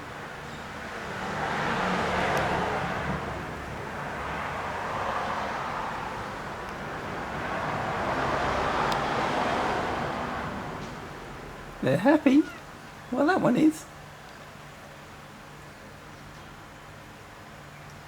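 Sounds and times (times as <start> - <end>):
cars passing: 0.0 - 13.8.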